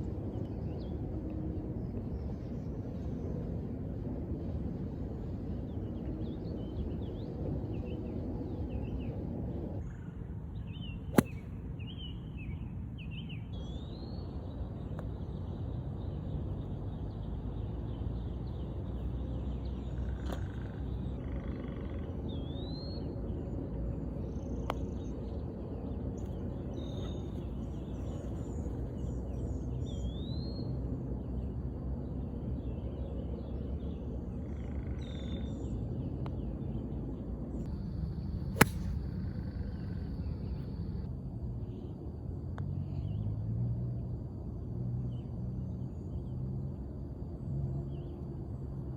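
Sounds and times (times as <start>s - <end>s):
low outdoor rumble: 0.0s - 48.9s
golf club striking ball: 11.1s - 11.4s, 38.6s - 39.1s.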